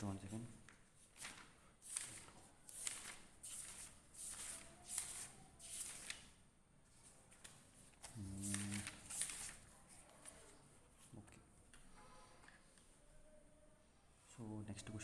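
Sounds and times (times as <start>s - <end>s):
soft paper rustles: 0.0s - 13.0s.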